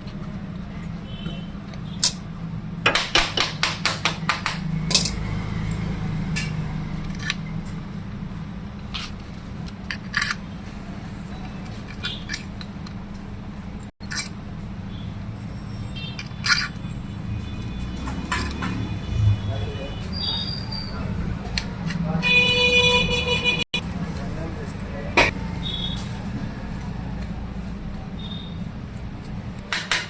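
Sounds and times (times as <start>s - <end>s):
hand tools tapping on metal: 1.7s - 5.2s.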